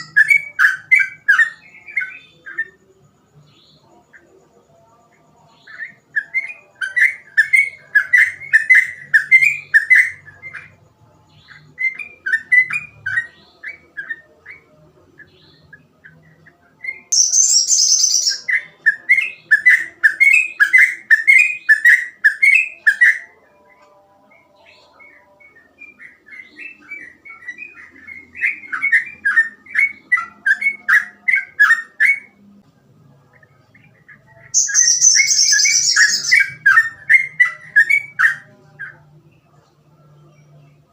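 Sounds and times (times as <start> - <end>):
bird singing chattering notes: 17.1 - 18.5, 34.6 - 36.7
harsh high-pitched bird burst: 17.2 - 18.4, 34.6 - 36.4.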